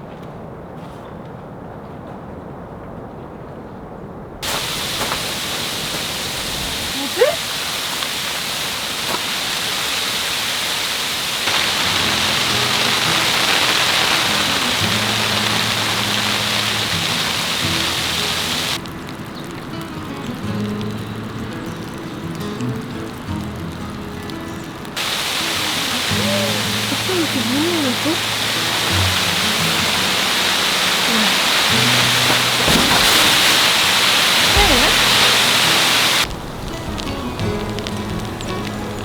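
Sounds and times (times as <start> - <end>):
heavy rain hissing: 4.4 - 39.0
soft background music: 34.6 - 39.0.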